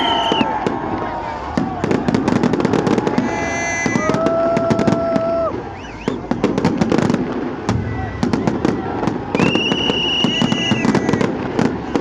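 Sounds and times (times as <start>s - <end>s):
up-and-down whistle: 0.0s - 0.5s, 3.2s - 4.2s, 5.7s - 6.3s, 9.4s - 11.3s
fireworks cracks and bangs: 0.0s - 12.0s
steady horn-like tone: 3.2s - 4.0s.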